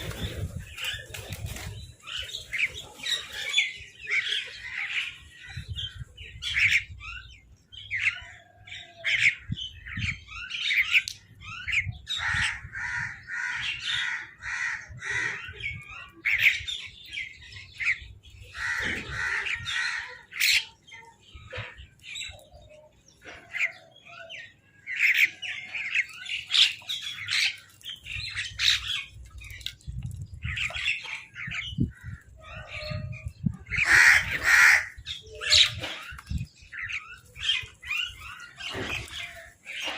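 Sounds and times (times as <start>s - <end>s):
crows cawing: 12.2s - 15.5s, 18.5s - 20.3s, 33.8s - 35.0s.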